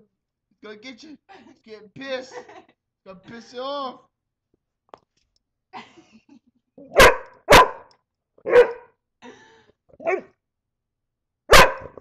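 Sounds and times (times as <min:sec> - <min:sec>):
dog barking: 0:06.9 - 0:09.0, 0:10.0 - 0:10.3, 0:11.5 - 0:12.0.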